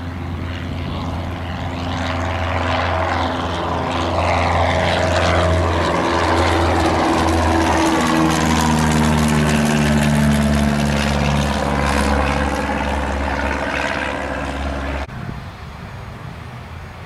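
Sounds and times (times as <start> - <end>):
propeller airplane engine: 0.0 - 17.0.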